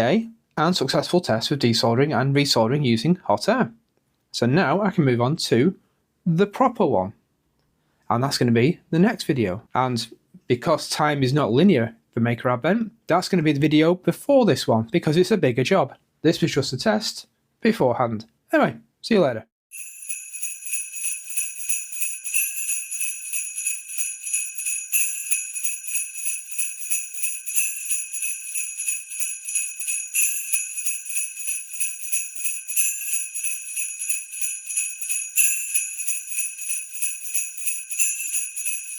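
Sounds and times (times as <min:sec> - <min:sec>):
sleigh bells shaken: 0:19.7 - 0:38.9.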